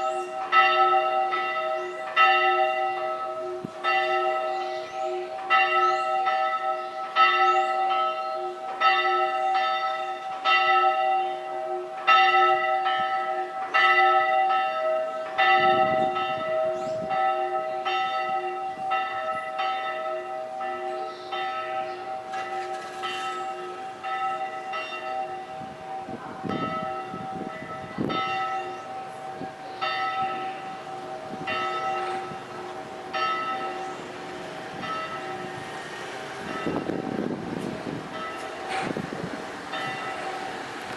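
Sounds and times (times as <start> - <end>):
church bells ringing: 0.0 - 40.9.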